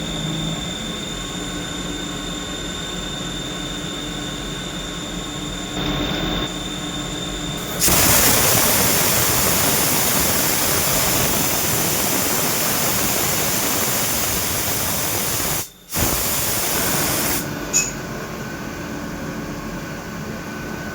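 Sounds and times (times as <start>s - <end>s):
mechanical hum: 0.0s - 20.9s
loud spraying hiss: 7.6s - 17.4s.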